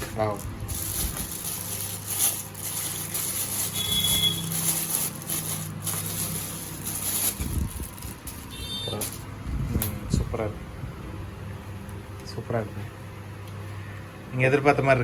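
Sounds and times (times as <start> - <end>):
plastic packaging crinkling: 0.0 - 9.3
steady low hum: 0.0 - 15.0.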